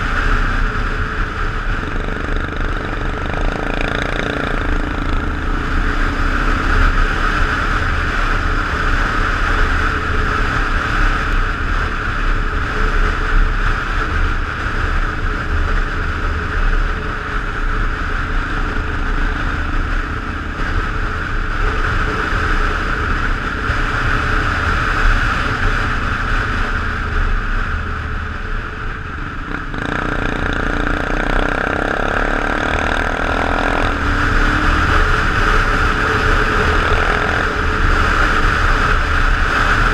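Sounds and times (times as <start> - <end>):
motorcycle exhaust: 0.0 - 39.9.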